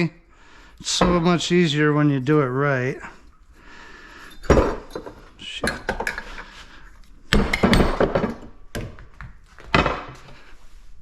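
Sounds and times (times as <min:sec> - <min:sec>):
metal parts thunking: 0:04.2 - 0:06.4, 0:07.3 - 0:08.8.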